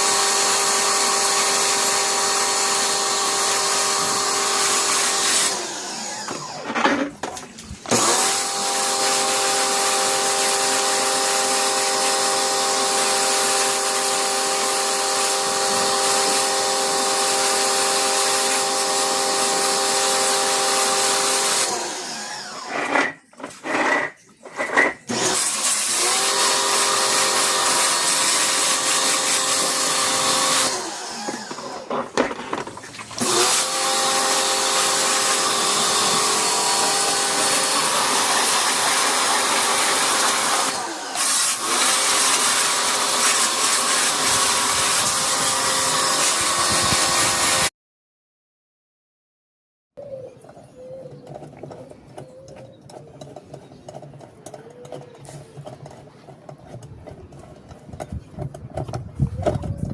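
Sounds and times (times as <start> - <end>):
small electric motor running: 24.8 - 31.9, 33.2 - 47.7.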